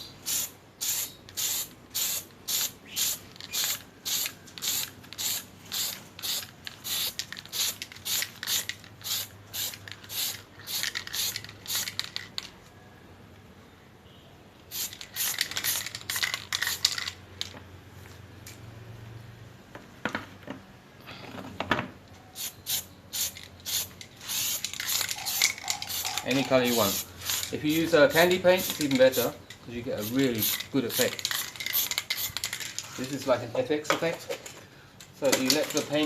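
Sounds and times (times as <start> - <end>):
spray paint hissing from can: 0.1 - 12.4, 14.7 - 17.2, 22.4 - 33.3.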